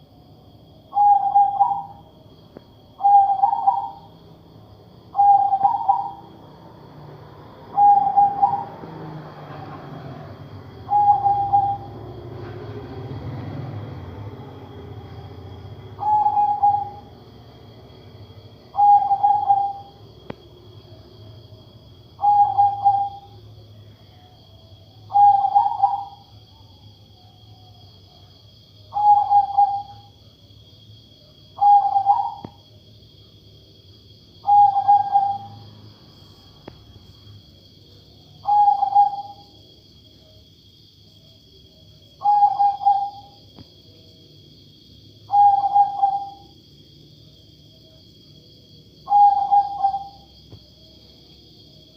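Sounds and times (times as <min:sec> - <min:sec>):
dove cooing: 0:00.9 - 0:02.0, 0:03.0 - 0:04.1, 0:05.1 - 0:06.4, 0:07.7 - 0:08.8, 0:10.8 - 0:12.0, 0:15.9 - 0:17.2, 0:18.7 - 0:20.0, 0:22.2 - 0:23.4, 0:25.1 - 0:26.3, 0:28.9 - 0:30.2, 0:31.6 - 0:32.6, 0:34.4 - 0:35.6, 0:38.4 - 0:39.6, 0:42.2 - 0:43.4, 0:45.3 - 0:46.5, 0:49.1 - 0:50.3.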